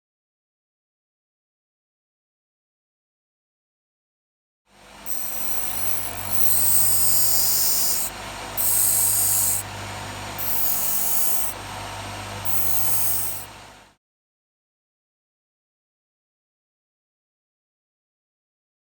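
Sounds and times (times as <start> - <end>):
welding arc buzzing and crackling: 4.8 - 13.9.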